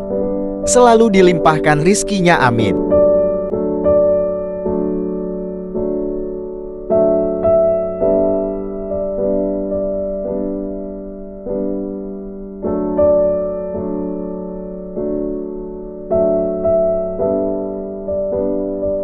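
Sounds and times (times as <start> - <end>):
slow gentle piano music: 0.0 - 19.0.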